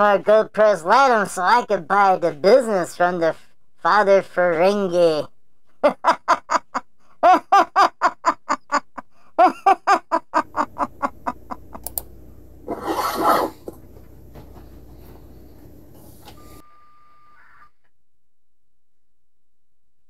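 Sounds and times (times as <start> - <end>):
man laughing: 5.8 - 11.8
brief steady beep: 16.3 - 17.4.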